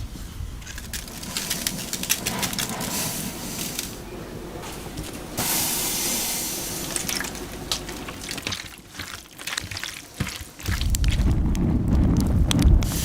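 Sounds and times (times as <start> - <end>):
utensils clicking and knocking: 0.6 - 4.0
water pouring: 5.4 - 12.4
loud low rumble: 10.7 - 13.0.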